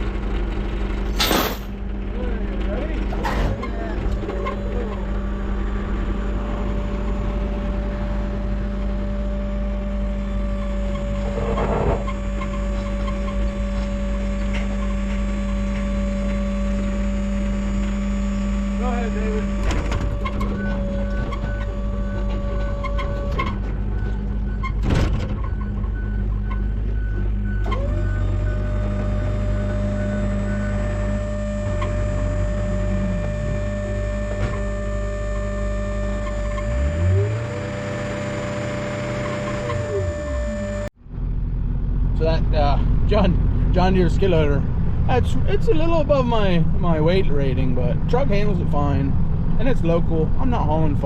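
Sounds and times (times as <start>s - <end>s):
road noise: 0.0s - 51.0s
truck engine droning: 0.0s - 51.0s.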